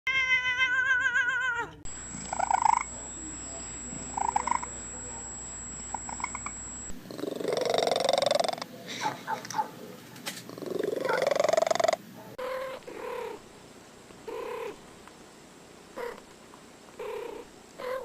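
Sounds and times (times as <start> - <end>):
wavering pitched tone: 1.9 - 8.6
cat purring in pulses: 7.0 - 8.6, 10.4 - 13.4, 14.3 - 14.8, 17.0 - 18.0.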